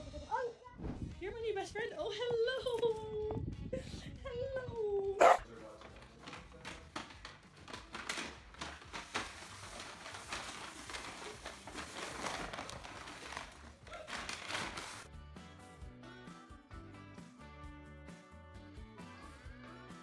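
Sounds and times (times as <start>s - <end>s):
rustling crinkling noise: 5.2s - 15.1s.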